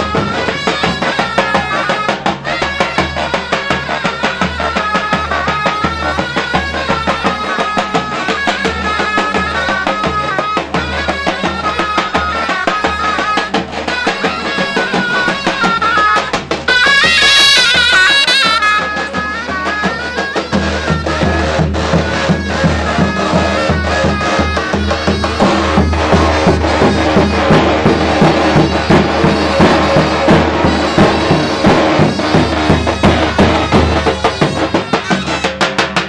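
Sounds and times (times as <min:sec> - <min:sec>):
reedy pipe melody: 0:00.0 - 0:36.0
bass drum beating: 0:20.6 - 0:35.2.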